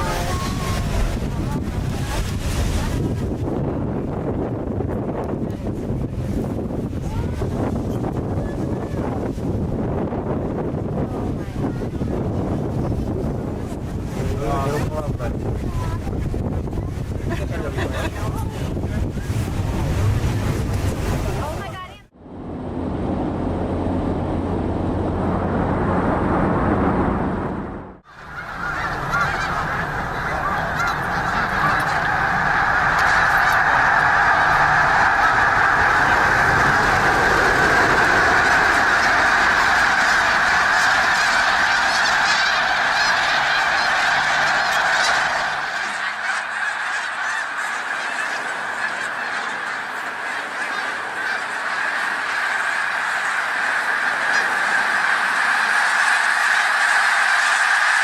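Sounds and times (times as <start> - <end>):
flock of birds calling: 0.0 - 3.8, 9.9 - 22.0, 28.1 - 58.0.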